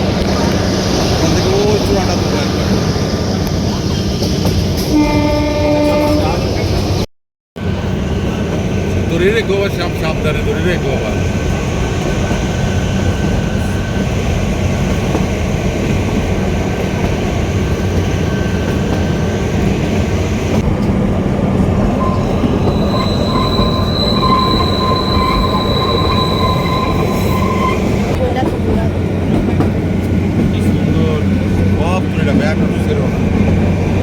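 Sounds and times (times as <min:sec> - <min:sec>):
train rumbling and rattling on rails: 0:00.0 - 0:34.0
high wheel squeal: 0:21.9 - 0:28.1.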